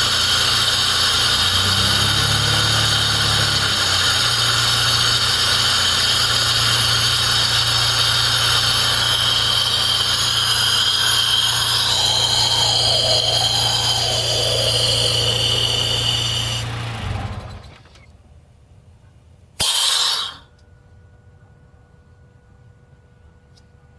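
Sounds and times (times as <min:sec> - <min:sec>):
high-pitched whine: 0:00.0 - 0:17.0
vehicle engine low hum: 0:00.0 - 0:19.6.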